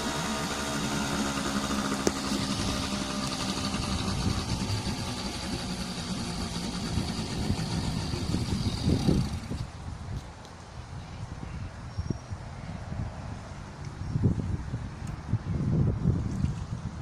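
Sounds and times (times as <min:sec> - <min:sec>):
two-stroke outboard motor running: 0:00.0 - 0:09.9.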